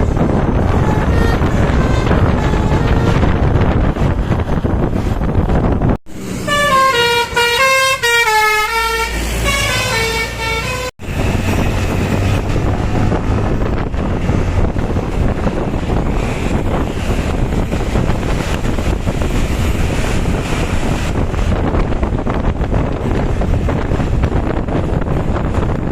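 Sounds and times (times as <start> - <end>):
wind rumble on microphone: 0.0 - 7.8, 11.0 - 25.9
road noise: 0.0 - 25.9
multi-tone air horn melody: 0.6 - 3.5, 6.4 - 10.9.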